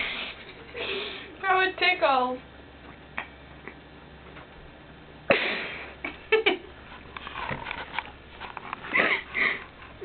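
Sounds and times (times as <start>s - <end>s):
soft breathing: 8.9s - 10.0s.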